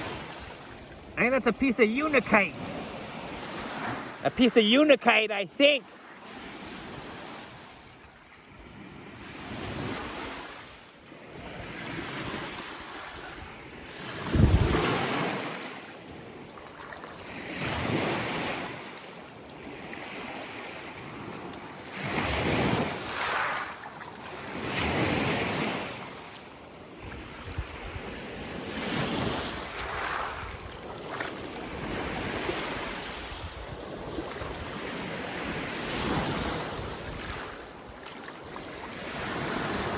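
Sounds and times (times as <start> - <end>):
waves breaking on rocky beach: 0.0 - 7.7, 8.4 - 39.9
wind rumbling on microphone: 14.2 - 15.0, 27.0 - 28.2.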